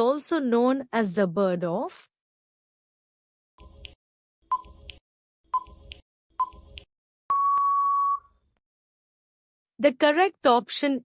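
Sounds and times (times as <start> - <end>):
long steady beep: 7.3 - 8.3
short electronic beeps: 7.3 - 8.3.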